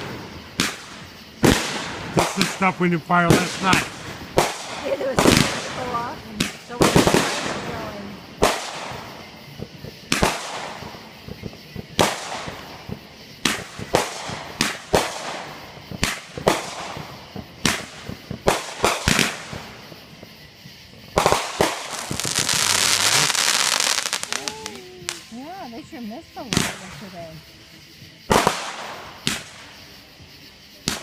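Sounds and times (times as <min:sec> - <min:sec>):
fireworks bangs: 0:00.0 - 0:27.5, 0:28.3 - 0:31.0
fireworks hissing crackle: 0:00.0 - 0:31.0.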